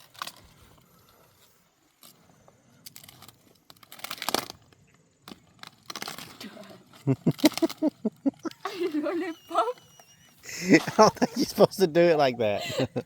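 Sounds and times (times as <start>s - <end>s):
leaves crunching and rustling: 3.0s - 8.3s.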